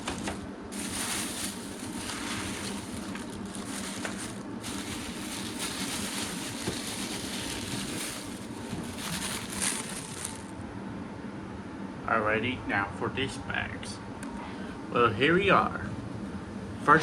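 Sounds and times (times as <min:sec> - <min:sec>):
plastic bag crinkling: 0:00.0 - 0:10.5.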